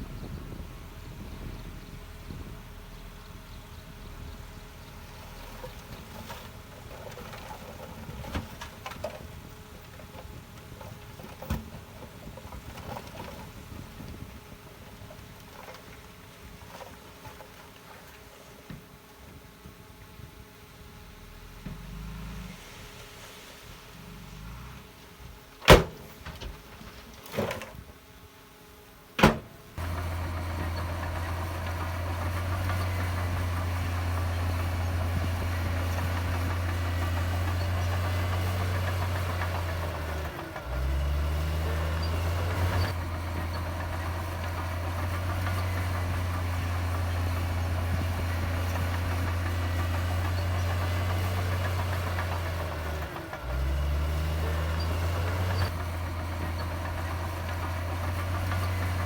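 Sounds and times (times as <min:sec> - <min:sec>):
heavy diesel engine droning: 0:29.2 - 0:59.0.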